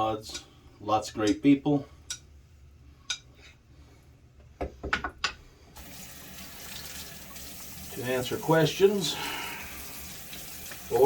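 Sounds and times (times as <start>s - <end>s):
tap water running: 5.8s - 11.0s.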